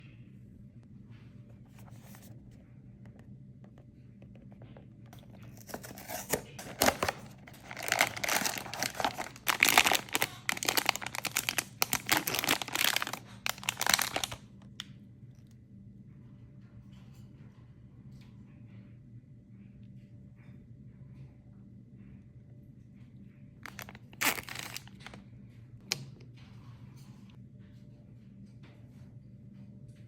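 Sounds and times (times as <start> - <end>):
packaging crinkling and tearing: 5.2 - 14.5, 23.6 - 25.2.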